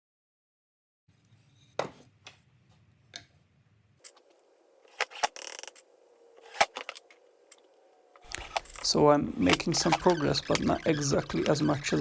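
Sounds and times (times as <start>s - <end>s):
short rasp on wood: 9.4s - 12.0s.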